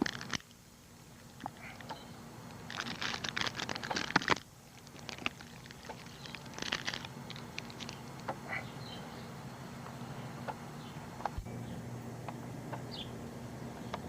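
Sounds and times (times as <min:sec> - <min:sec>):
low steady hum: 0:00.0 - 0:14.0
rapid crackling and clicking: 0:01.2 - 0:08.4.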